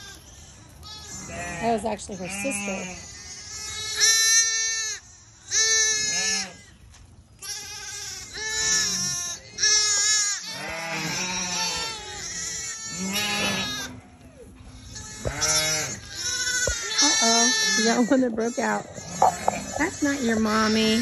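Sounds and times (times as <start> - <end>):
lambs bleating: 0.0 - 6.8, 7.4 - 21.0
ewes calling: 0.0 - 21.0.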